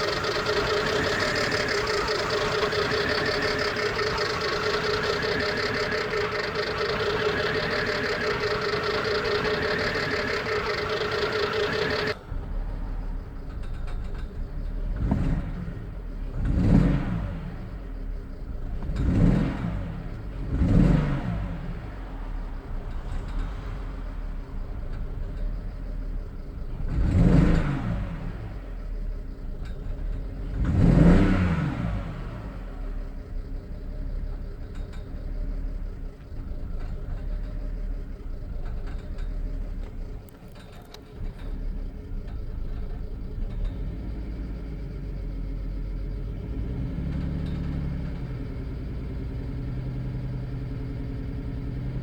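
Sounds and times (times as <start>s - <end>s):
car engine revving: 0.0s - 33.7s
car engine idling: 0.0s - 52.0s.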